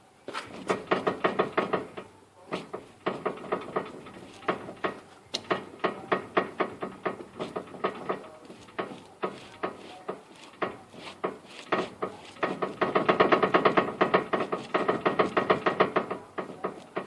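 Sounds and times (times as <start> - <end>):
steering rack clicking: 10.5 - 17.0.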